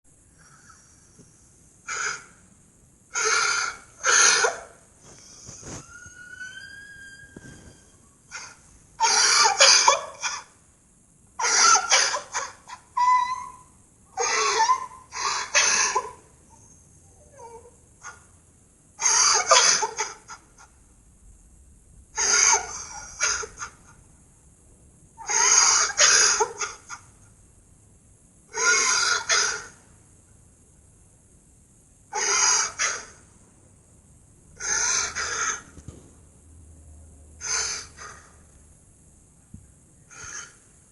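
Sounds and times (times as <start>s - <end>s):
high whimper: 3.1s - 10.5s, 11.4s - 18.2s, 22.2s - 24.0s, 40.1s - 40.7s.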